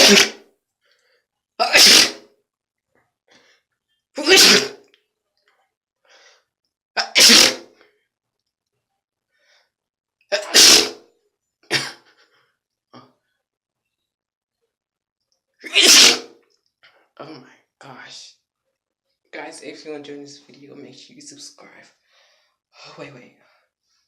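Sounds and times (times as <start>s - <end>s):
person sneezing: 0.0s - 0.4s, 1.6s - 2.2s, 4.2s - 4.8s, 7.0s - 7.8s, 10.3s - 11.0s, 15.6s - 16.3s.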